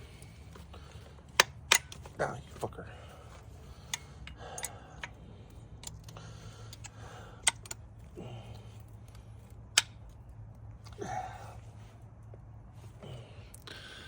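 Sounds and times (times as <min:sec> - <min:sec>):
low steady hum: 0:00.0 - 0:14.0
metallic clicks and taps: 0:01.3 - 0:02.1, 0:05.8 - 0:07.8, 0:09.7 - 0:10.2.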